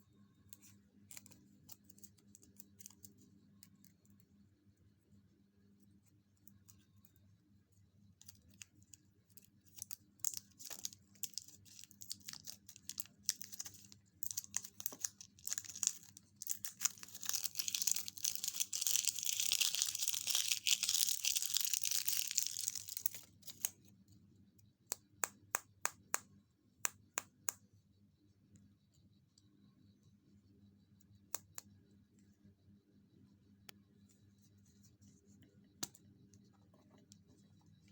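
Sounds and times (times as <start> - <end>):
wrapper crinkling and tearing: 9.7 - 23.7
wrapper clicks and taps: 9.8 - 23.7.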